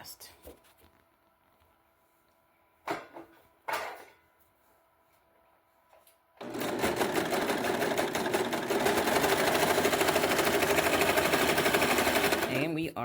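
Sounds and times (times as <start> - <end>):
overlocker stitching rattle: 6.4 - 12.6.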